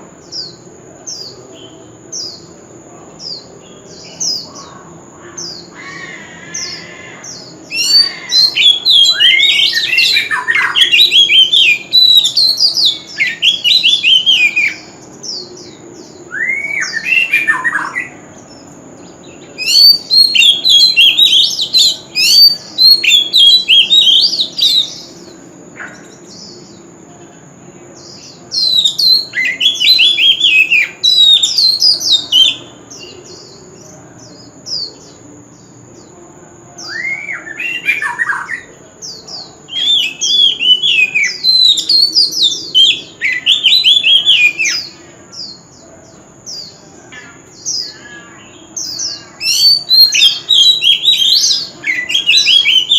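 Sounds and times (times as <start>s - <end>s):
bird singing whistles: 6.5s - 18.2s, 19.5s - 26.0s, 28.2s - 32.8s, 36.8s - 38.7s, 39.7s - 45.6s, 47.2s - 52.9s.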